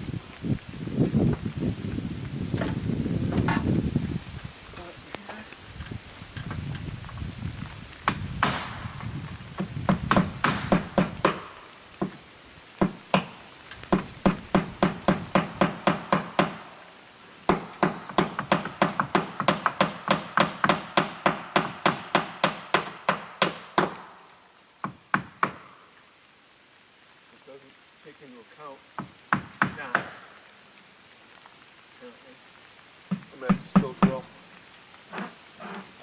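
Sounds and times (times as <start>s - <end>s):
hammer driving nails: 10.0s - 11.5s.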